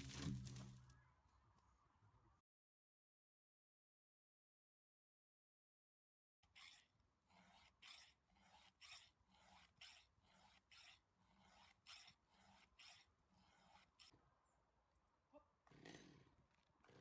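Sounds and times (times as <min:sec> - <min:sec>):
file rasping on chainsaw chain: 0:06.5 - 0:14.1, 0:15.7 - 0:17.0.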